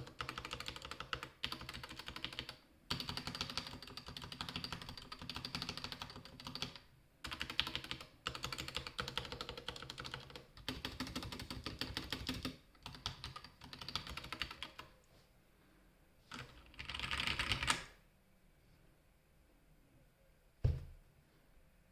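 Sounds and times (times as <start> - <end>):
typing on mechanical keyboard: 0.0 - 14.9, 16.3 - 18.0.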